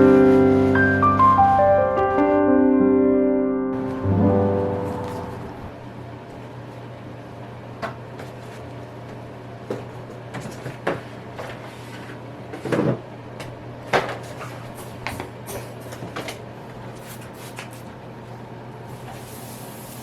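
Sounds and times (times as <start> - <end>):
steady low hum: 3.8 - 11.6.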